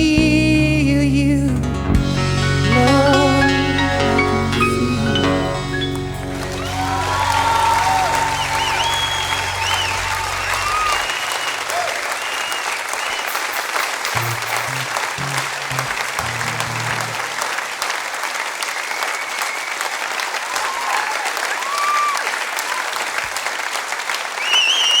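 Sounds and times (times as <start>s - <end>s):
audience applauding and cheering: 5.8s - 25.0s
whoops and whistles: 6.6s - 13.6s, 24.4s - 25.0s
low instrument notes: 14.1s - 17.5s.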